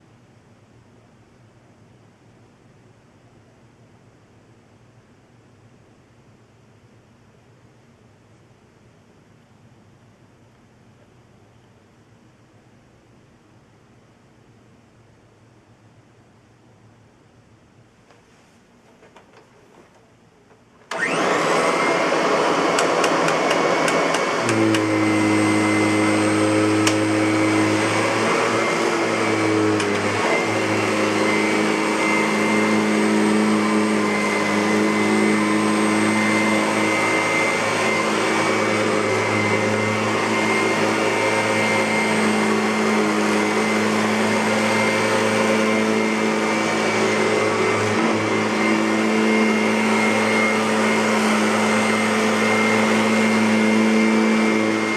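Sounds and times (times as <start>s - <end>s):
vacuum cleaner whine: 18.1s - 54.9s.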